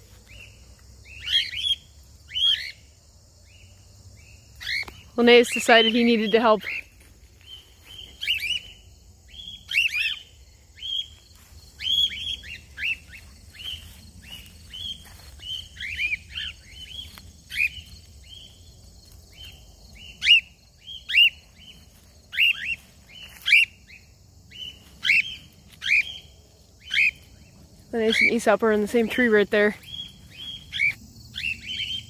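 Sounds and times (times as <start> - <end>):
cockatiels whistling calls: 22.3 - 23.7, 24.5 - 26.2, 26.8 - 27.2.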